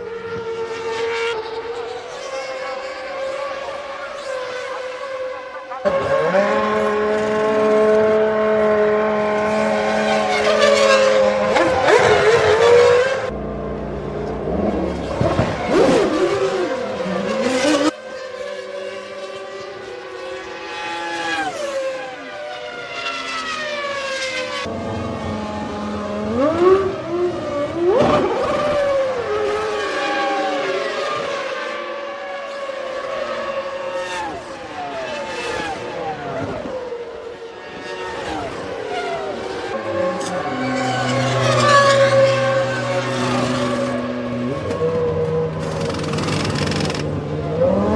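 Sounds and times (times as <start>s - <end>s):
racing car engines revving: 0.0s - 47.9s.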